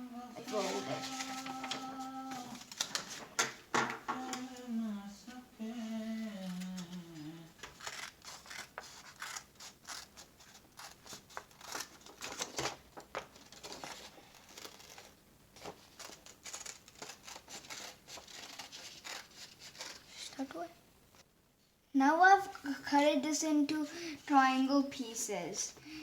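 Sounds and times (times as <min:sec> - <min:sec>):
scissors cutting paper: 0:06.4 - 0:20.5.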